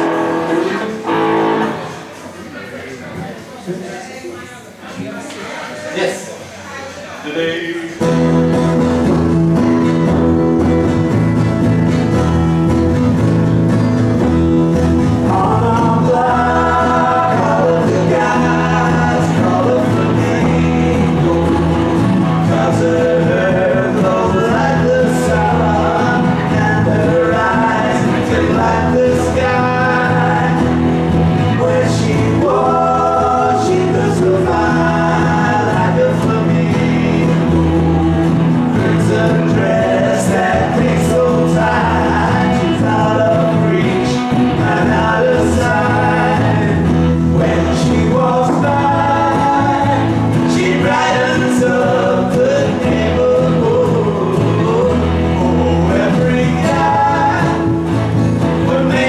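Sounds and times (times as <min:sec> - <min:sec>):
live band playing: 0:00.0 - 0:02.5, 0:08.0 - 0:59.0
men singing together: 0:14.2 - 0:59.0.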